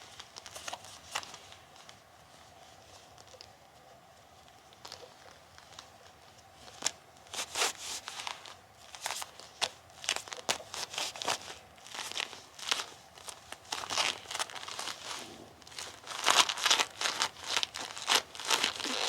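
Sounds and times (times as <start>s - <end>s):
rubber gloves rubbing together: 10.1s - 19.0s.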